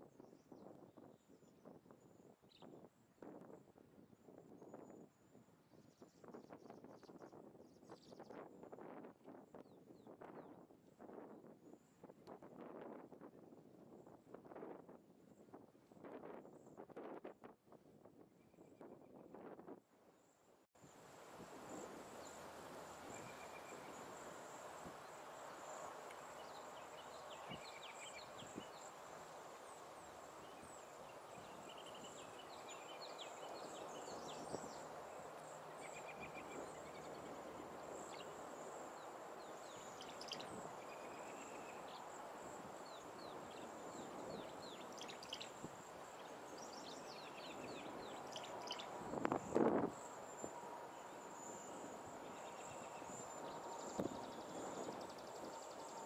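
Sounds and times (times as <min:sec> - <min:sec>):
outdoor background hiss: 0:19.4 - 0:56.0
small birds chirping: 0:23.0 - 0:50.4.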